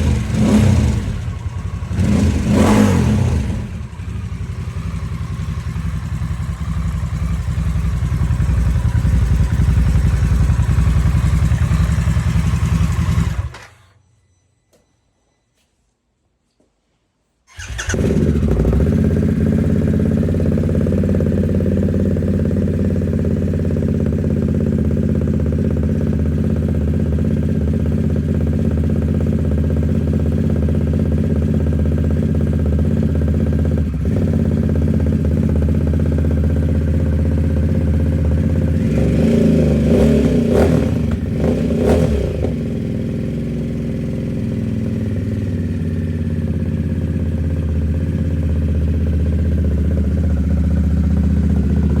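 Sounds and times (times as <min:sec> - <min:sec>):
throttle blips revving engine: 0:00.0 - 0:05.1, 0:38.3 - 0:43.0
motorcycle engine idling: 0:00.0 - 0:13.6, 0:17.5 - 0:52.0.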